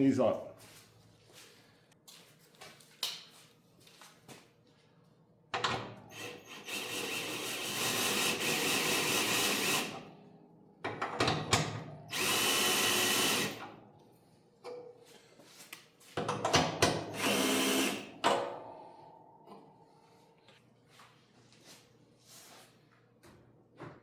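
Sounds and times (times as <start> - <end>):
cordless power drill running: 6.1 - 10.0, 12.1 - 13.6, 17.1 - 18.1.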